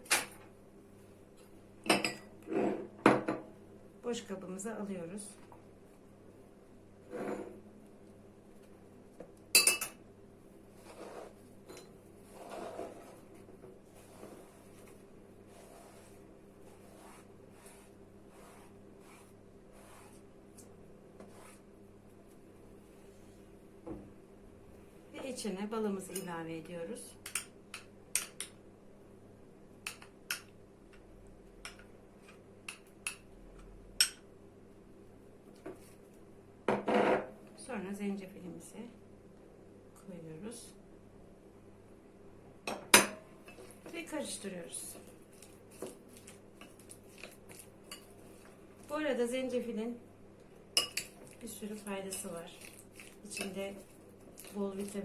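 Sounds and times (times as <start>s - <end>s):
spoon clinking against a bowl: 9.6s - 10.0s, 50.8s - 51.2s
onion scraped from cutting board: 10.8s - 11.4s, 12.2s - 13.2s.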